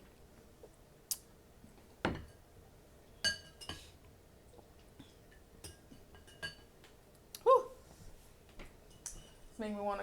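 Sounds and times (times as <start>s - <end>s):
dishes and cutlery clinking: 3.2s - 4.0s, 5.3s - 6.8s, 8.9s - 9.6s.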